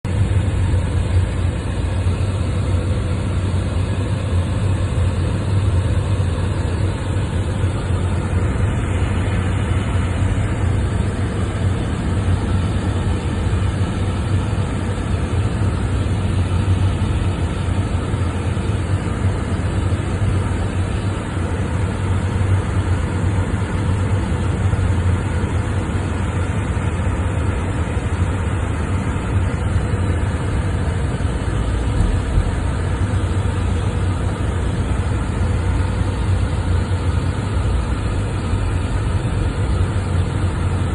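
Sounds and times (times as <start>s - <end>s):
vehicle engine running steadily: 0.0s - 40.9s.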